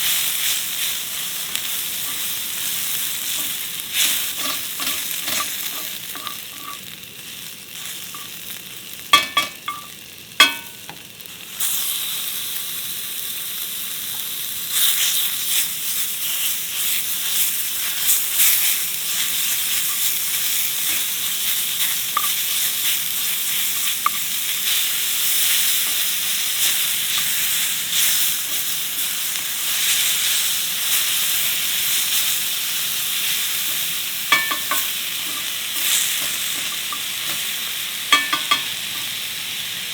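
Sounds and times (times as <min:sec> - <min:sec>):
food sizzling in a pan: 0:00.0 - 0:39.9.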